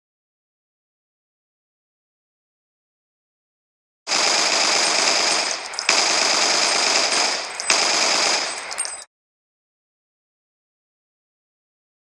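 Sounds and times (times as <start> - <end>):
rifle firing fully automatic: 4.1 - 9.0.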